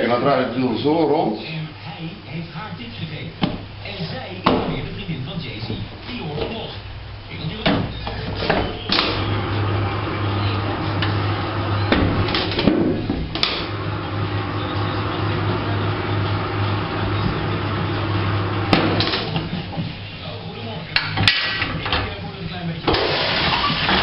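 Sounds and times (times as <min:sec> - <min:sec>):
electric motor humming: 0:09.1 - 0:12.5, 0:13.6 - 0:19.5.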